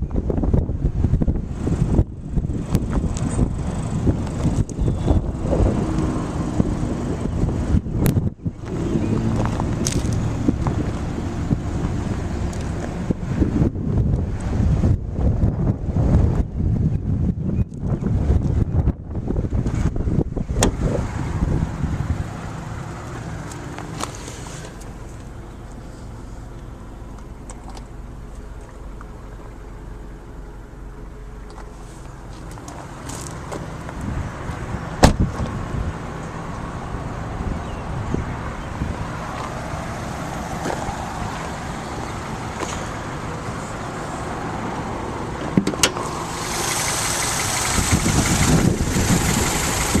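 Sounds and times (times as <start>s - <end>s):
car engine idling: 20.0s - 50.0s.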